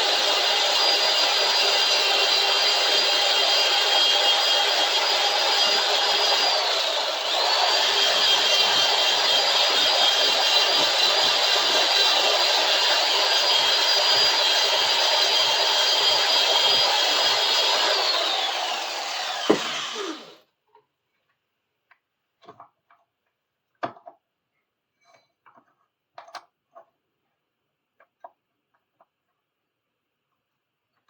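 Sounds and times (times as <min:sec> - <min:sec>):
power tool whining: 0:00.0 - 0:20.4.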